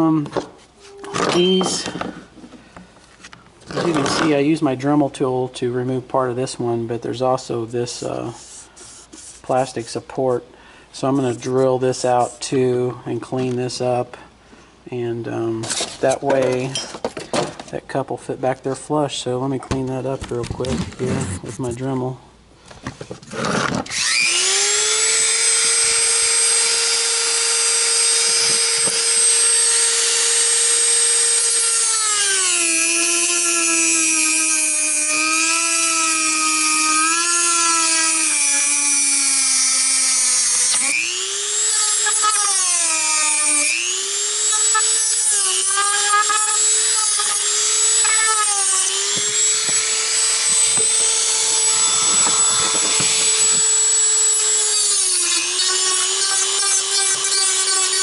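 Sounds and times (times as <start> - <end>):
rotary tool grinding plastic: 23.2 - 58.0.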